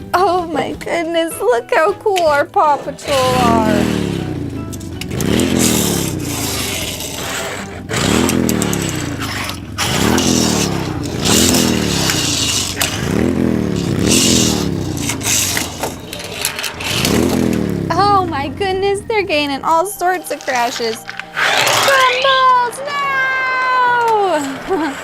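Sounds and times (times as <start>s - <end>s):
toy revving engine sound: 2.6s - 19.3s, 20.3s - 25.0s
toy car wheels rattling on ramp: 4.7s - 17.7s, 20.3s - 25.0s.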